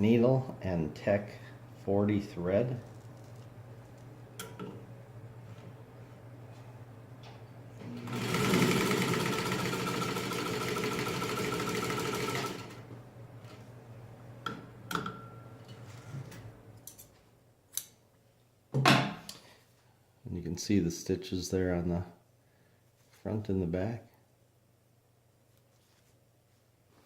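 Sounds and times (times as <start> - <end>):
sewing machine running: 7.8 - 12.9.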